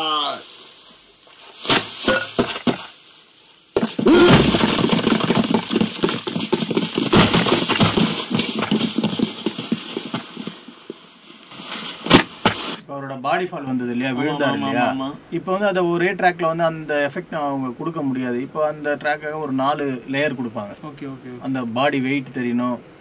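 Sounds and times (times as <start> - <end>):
sharp knocks: 3.8 - 10.6
clatter of quick impacts and scuffling: 3.8 - 12.8.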